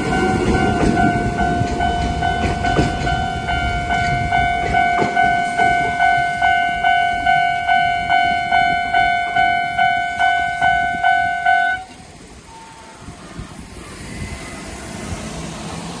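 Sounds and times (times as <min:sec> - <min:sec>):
level-crossing electronic bell: 0:00.0 - 0:11.8.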